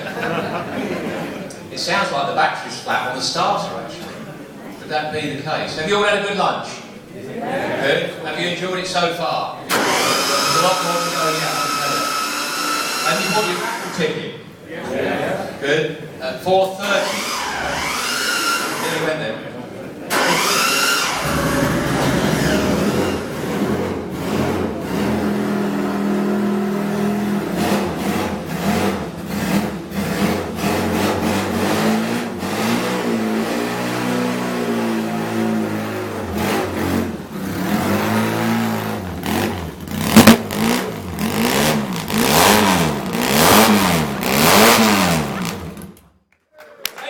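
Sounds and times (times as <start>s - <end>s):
motorcycle engine revving: 9.7s - 14.0s, 17.0s - 18.9s, 20.1s - 46.0s
sharp crack: 39.9s - 40.9s.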